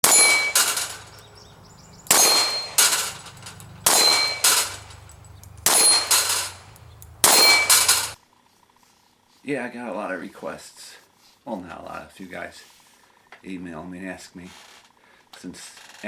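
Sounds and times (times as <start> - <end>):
pistol shots with metallic ring: 0.0 - 8.2.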